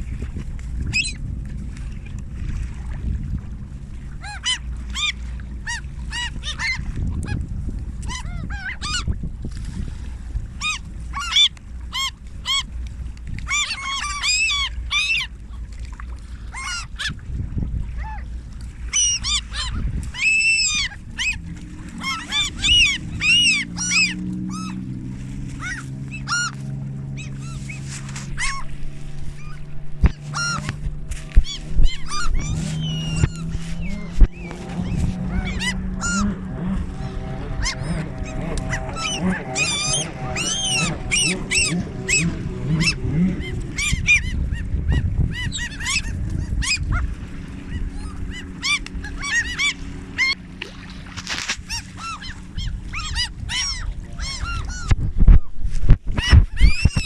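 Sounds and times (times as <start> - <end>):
waterbirds calling: 0.0 - 57.0
low rumble: 17.2 - 57.0.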